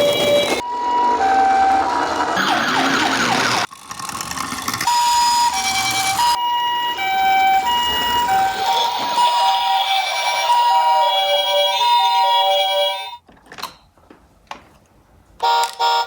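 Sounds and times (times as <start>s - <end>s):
two-tone ambulance siren: 0.0s - 3.7s, 4.8s - 13.2s.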